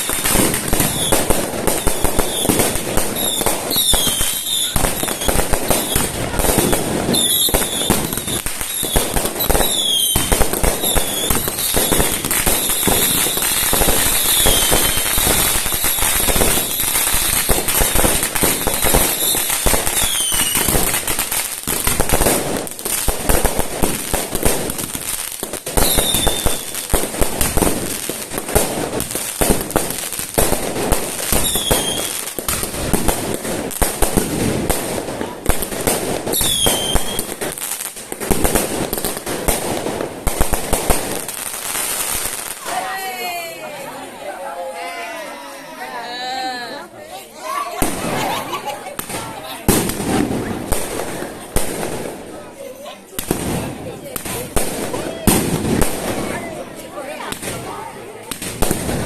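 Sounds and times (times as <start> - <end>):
fireworks falling whistles: 0.0 - 22.4, 25.4 - 33.1, 36.3 - 37.5
fireworks bangs and crackles: 0.0 - 43.6, 47.4 - 59.0.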